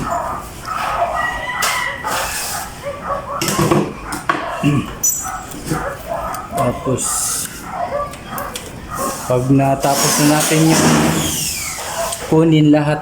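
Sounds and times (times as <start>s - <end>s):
dog yipping and whimpering: 0.0s - 9.6s, 11.2s - 12.4s
rooster crowing: 0.1s - 3.4s.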